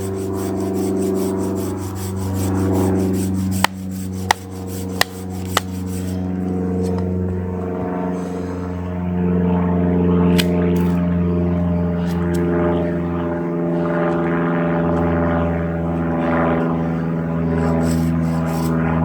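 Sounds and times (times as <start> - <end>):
engine drone: 0.0 - 19.0.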